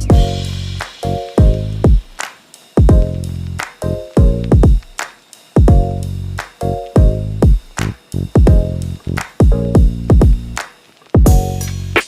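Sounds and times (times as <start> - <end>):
booming kick drum: 0.0 - 0.8, 1.4 - 2.2, 2.8 - 3.4, 4.2 - 5.0, 5.6 - 6.1, 7.0 - 10.6, 11.2 - 11.5
electronic music: 0.0 - 2.2, 2.8 - 5.0, 5.6 - 10.6, 11.2 - 12.0.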